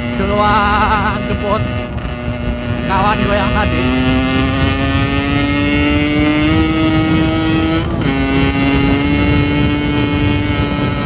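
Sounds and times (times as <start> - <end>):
two-stroke motorcycle engine: 0.0 - 11.0.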